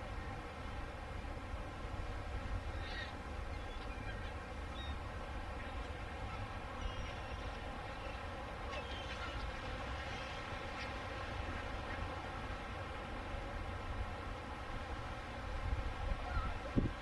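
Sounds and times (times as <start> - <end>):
droning hum: 0.0 - 17.0
faint bird chirps: 2.8 - 5.0, 5.6 - 9.4.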